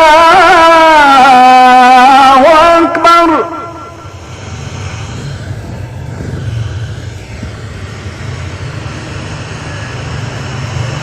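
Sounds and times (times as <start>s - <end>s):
steady low rumble: 3.3s - 10.8s.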